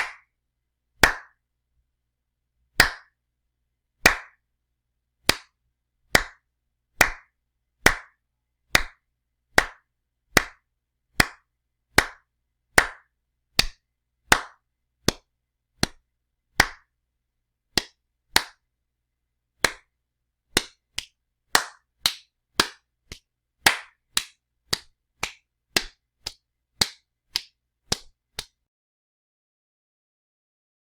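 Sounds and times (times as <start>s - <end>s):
sharp slaps: 0.0s - 0.3s, 1.0s - 1.3s, 2.8s - 3.1s, 4.0s - 4.4s, 5.3s - 5.5s, 6.2s - 6.4s, 7.0s - 7.3s, 7.9s - 8.1s, 8.8s - 9.0s, 9.6s - 9.8s, 10.4s - 10.6s, 11.2s - 11.4s, 12.0s - 12.2s, 12.8s - 15.2s, 16.6s - 16.9s, 17.8s - 18.6s, 19.6s - 19.8s, 20.6s - 28.6s.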